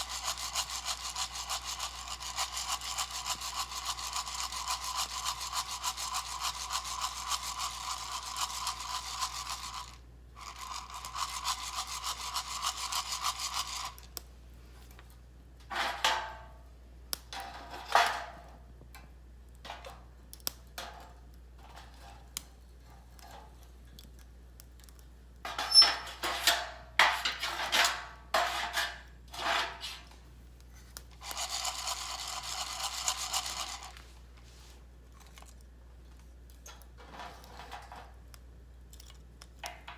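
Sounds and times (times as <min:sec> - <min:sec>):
coffee beans rattling in roaster: 0:00.0 - 0:14.2, 0:25.5 - 0:30.1, 0:31.2 - 0:34.2.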